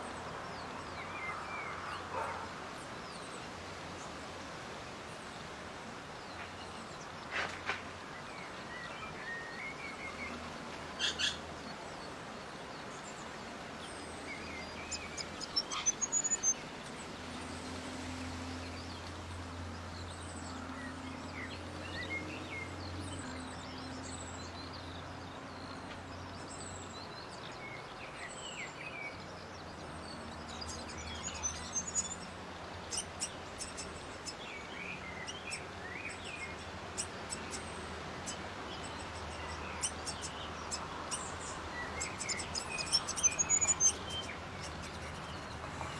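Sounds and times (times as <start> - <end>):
small birds chirping: 8.4 - 17.8, 20.0 - 45.9.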